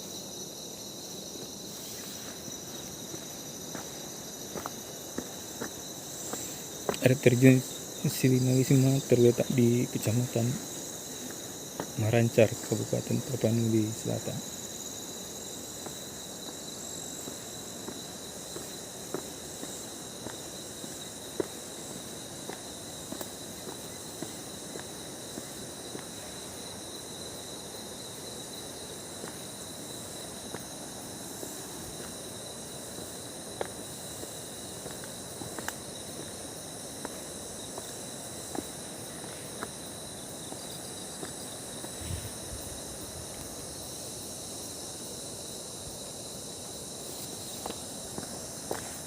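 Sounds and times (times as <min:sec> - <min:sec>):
insects chirring: 0:00.0 - 0:49.0
soft even hiss: 0:01.1 - 0:25.0.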